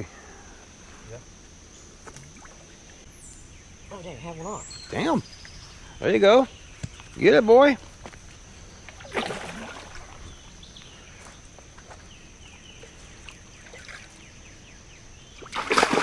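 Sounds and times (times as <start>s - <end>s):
high insect drone: 0.0s - 16.0s
fish splashing in water: 8.9s - 10.2s, 15.4s - 16.0s.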